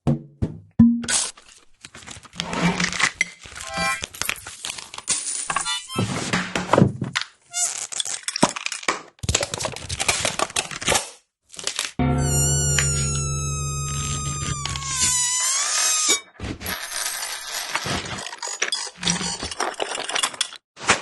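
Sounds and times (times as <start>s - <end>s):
short pitched tones: 12.0s - 15.6s
clattery knocks and rattles: 18.0s - 20.6s.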